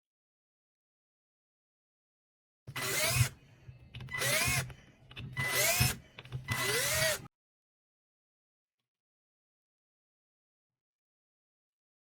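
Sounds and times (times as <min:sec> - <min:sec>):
impact driver motor whine: 0:02.7 - 0:07.3.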